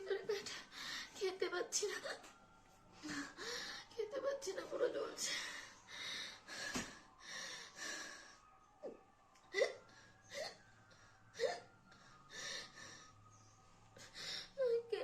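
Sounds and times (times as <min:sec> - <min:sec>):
woman gasping breaths: 0:03.0 - 0:03.9.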